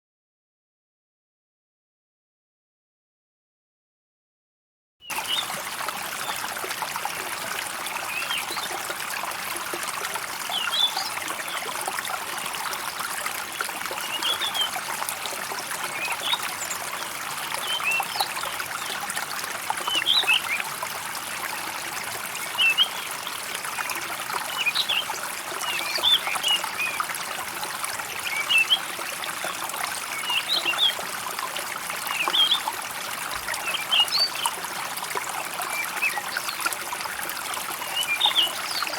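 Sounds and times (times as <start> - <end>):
stream trickling: 5.0 - 38.9.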